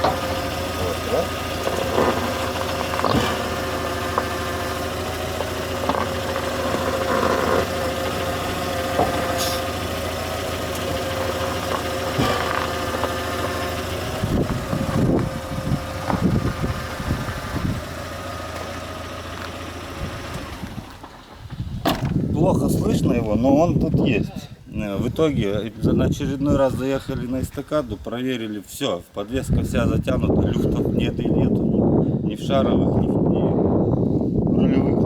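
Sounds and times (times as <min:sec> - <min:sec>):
low suspension knocks: 0:00.0 - 0:17.9, 0:18.5 - 0:22.4
van engine idling: 0:00.0 - 0:23.2.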